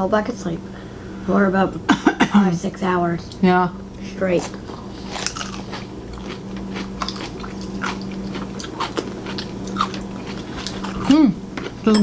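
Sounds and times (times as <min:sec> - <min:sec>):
person chewing food: 0:04.4 - 0:11.8.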